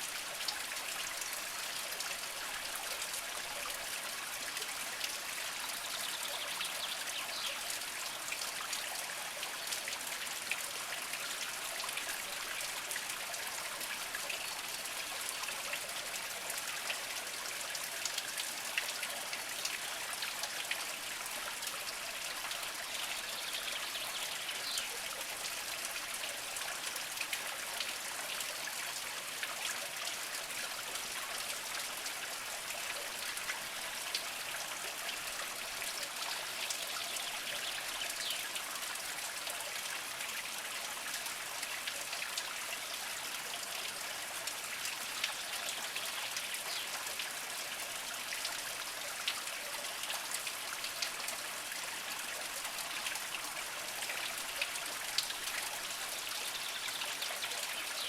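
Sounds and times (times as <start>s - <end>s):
spring water trickling over rocks: 0.0s - 58.0s
water drips and splashes: 0.0s - 58.0s.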